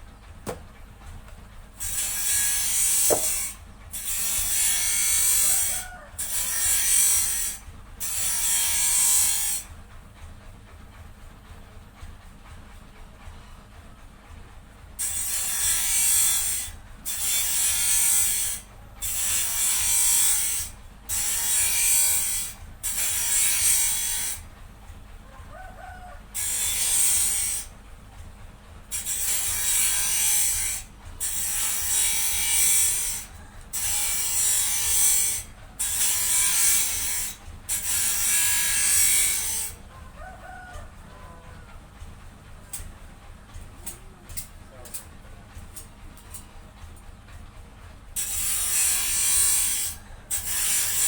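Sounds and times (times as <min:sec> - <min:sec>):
hand tool scraping wood: 0:01.8 - 0:07.5.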